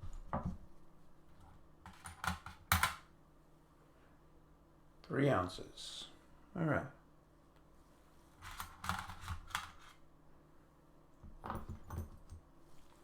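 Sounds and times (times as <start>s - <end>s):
small parts clicking and knocking: 1.8s - 3.1s, 8.4s - 9.9s.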